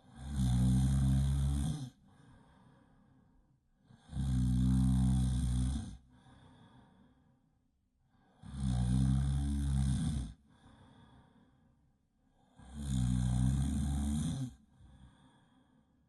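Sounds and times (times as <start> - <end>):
loud snoring: 0.0 - 2.0, 3.9 - 6.1, 8.4 - 10.4, 12.5 - 15.1
quiet breath: 0.0 - 16.0.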